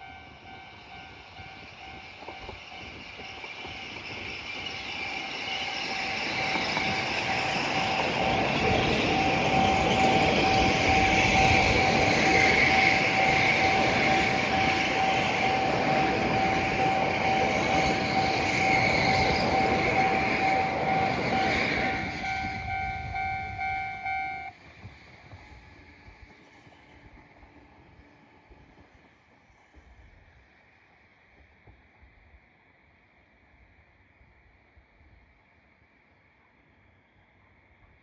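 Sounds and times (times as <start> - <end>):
crossing warning alarm ringing: 0.0 - 24.6
train rolling rumble: 0.0 - 35.7.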